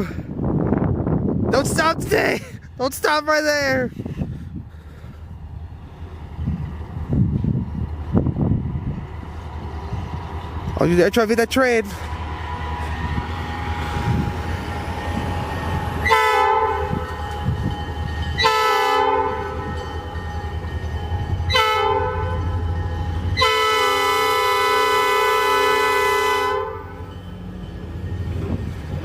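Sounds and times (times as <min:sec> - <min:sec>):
steady low rumble: 0:03.8 - 0:16.0
locomotive air horn blasts: 0:15.8 - 0:17.2, 0:18.4 - 0:19.7, 0:21.5 - 0:22.6, 0:23.4 - 0:27.1.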